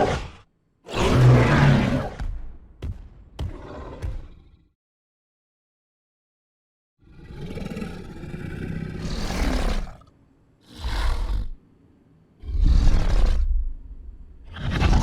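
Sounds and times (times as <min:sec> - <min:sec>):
dinosaur roars: 0:00.0 - 0:02.2, 0:07.0 - 0:11.6, 0:12.4 - 0:13.8, 0:14.4 - 0:15.0.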